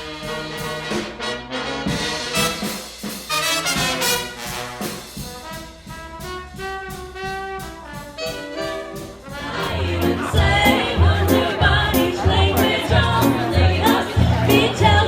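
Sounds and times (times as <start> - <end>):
swing band brass chords: 0.0 - 15.0
pulsing bass: 9.4 - 15.0.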